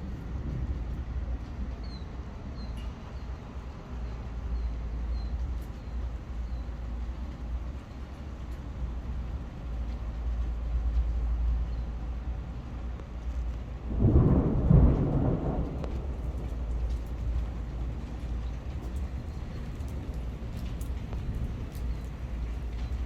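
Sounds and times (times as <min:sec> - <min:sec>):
distant thunder rumbling: 0:13.7 - 0:23.0.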